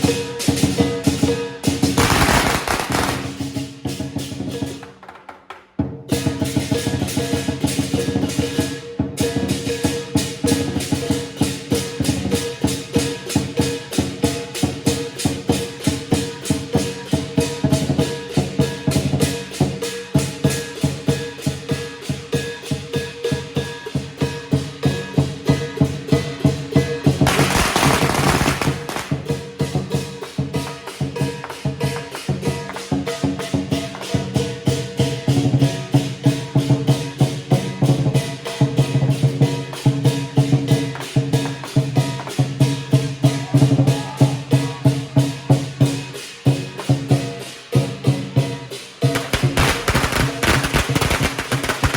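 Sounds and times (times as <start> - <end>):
drum cymbals and gong beat: 0.0 - 4.9, 5.8 - 51.9
dense crackling burst: 2.0 - 3.6, 27.2 - 29.2, 49.1 - 51.9.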